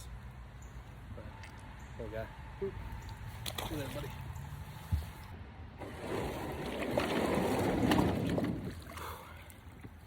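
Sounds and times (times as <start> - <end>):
water splashing against kayak: 5.8 - 10.0.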